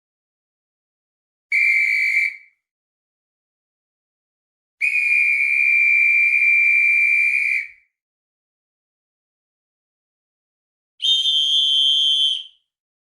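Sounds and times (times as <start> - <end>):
high whistle blasts: 1.5 - 2.6, 4.8 - 7.9, 11.0 - 12.6.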